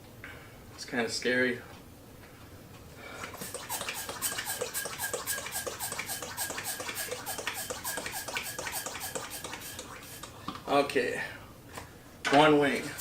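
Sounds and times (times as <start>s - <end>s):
balloon squeaking: 3.4s - 10.3s.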